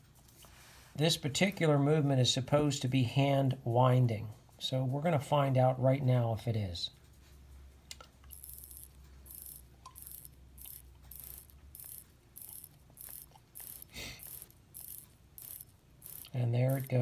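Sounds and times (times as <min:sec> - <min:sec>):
watch ratcheting clicks: 0:08.3 - 0:17.0.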